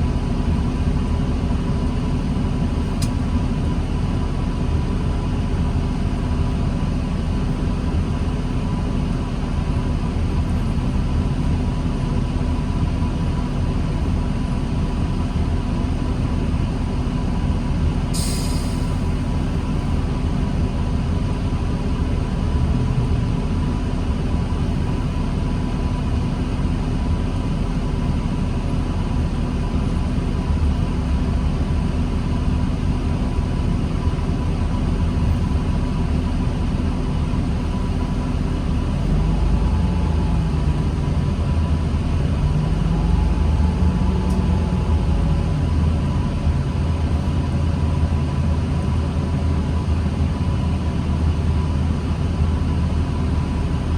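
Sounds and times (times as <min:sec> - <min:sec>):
bus diesel engine drone: 0:00.0 - 0:53.9.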